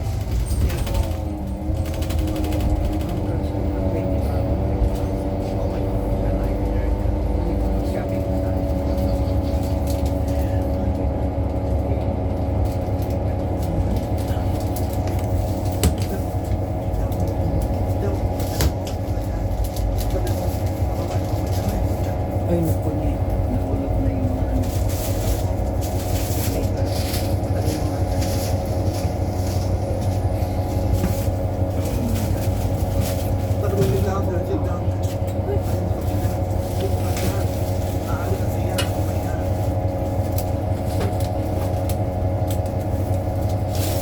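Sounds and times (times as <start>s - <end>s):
rattles and clicks: 0.0s - 5.9s
bus engine rumble: 0.0s - 44.0s
steady multi-tone hum: 0.0s - 44.0s.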